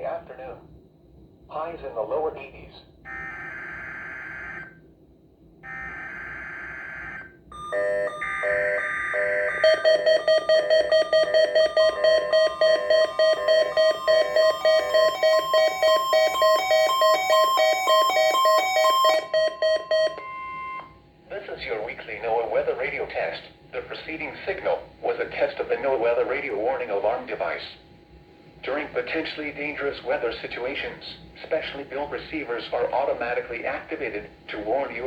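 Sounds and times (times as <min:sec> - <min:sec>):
steady electronic tone: 0:07.5 - 0:20.9
electronic alert beeping: 0:07.6 - 0:20.9.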